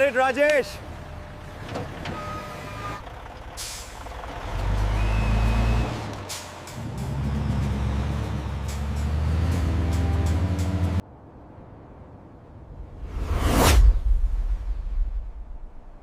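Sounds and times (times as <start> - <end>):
heavy truck engine running: 0.7 - 11.0
air brakes hissing: 3.6 - 4.0, 5.0 - 6.9.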